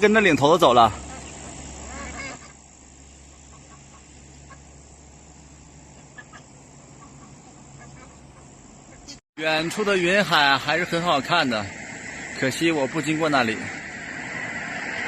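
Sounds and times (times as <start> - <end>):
chicken calls: 0.0 - 15.0.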